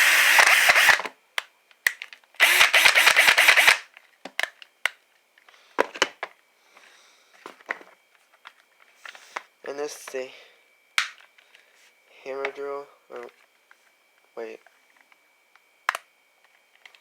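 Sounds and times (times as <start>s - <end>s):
cordless drill running: 0.0s - 1.1s, 2.4s - 3.9s.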